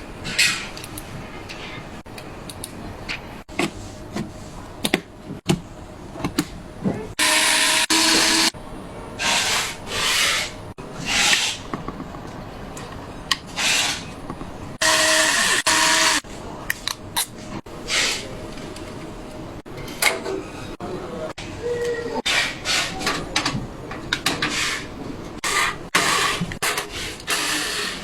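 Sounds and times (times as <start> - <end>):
electric screwdriver running: 7.2 - 8.5, 14.8 - 16.2.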